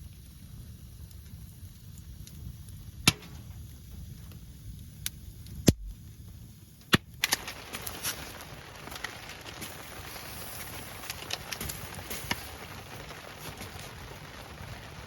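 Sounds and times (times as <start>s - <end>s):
low background rumble: 0.0s - 15.0s
sharp cracks: 3.0s - 3.6s, 6.8s - 15.0s.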